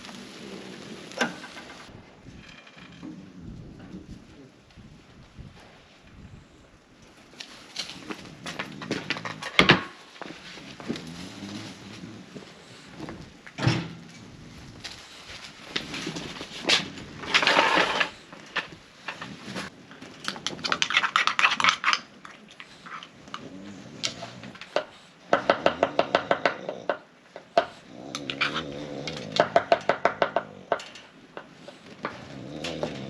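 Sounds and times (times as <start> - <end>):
utensils and dishes scraping: 15.9 - 26.1, 27.4 - 33.0.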